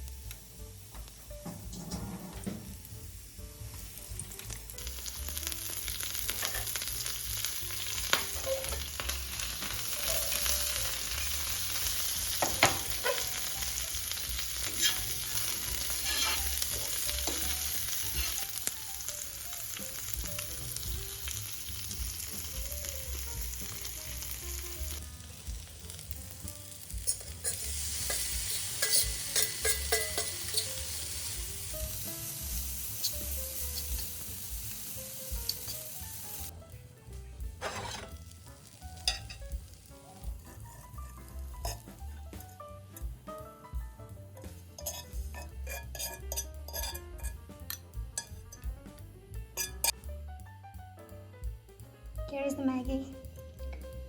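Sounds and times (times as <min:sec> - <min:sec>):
food sizzling in a pan: 0:00.0 - 0:50.4
utensil scraping pan: 0:01.4 - 0:02.7, 0:14.6 - 0:18.5, 0:27.0 - 0:31.0, 0:37.6 - 0:38.3, 0:44.8 - 0:47.4.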